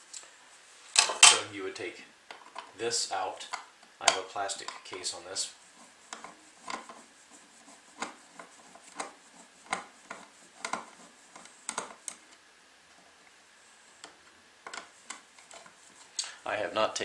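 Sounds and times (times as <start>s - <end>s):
plastic parts clicking: 8.9s - 12.3s, 14.0s - 15.7s.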